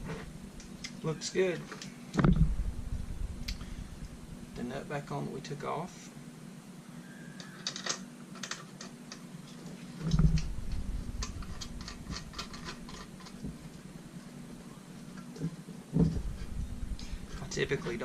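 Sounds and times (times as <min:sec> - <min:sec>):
low thump: 0:02.2 - 0:03.3
metal nut clicking and rattling: 0:11.2 - 0:13.4.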